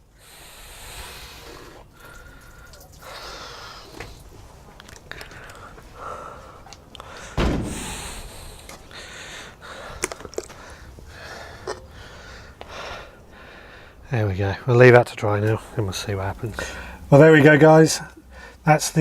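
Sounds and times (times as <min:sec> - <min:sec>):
loud thump: 0:07.4 - 0:08.5.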